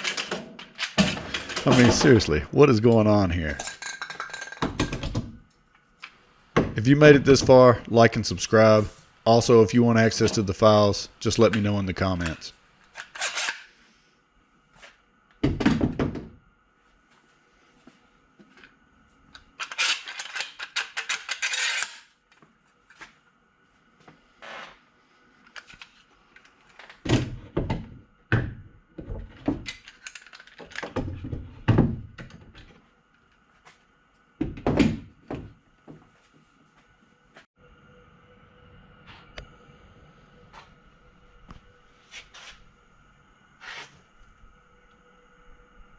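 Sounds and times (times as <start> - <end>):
clamps rattling clatter: 0.0 - 2.4.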